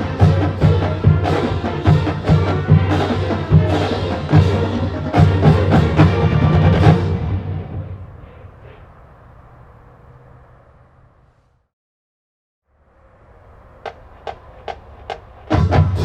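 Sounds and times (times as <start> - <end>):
drum strikes: 0.0 - 7.9, 13.9 - 16.0
marching band playing: 0.0 - 8.2, 14.1 - 16.0.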